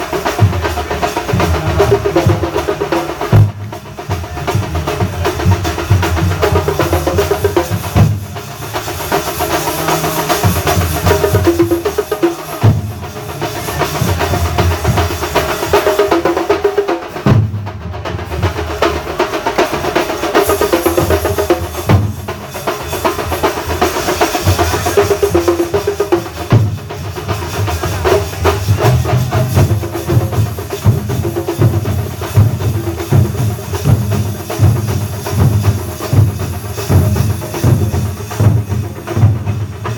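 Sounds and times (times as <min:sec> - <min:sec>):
percussion ensemble drumming: 0:00.0 - 0:39.9
bass drum strokes: 0:26.4 - 0:39.9.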